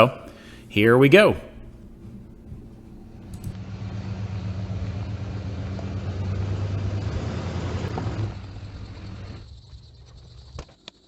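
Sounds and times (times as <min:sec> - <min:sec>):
motor humming and rushing: 0:01.5 - 0:09.7.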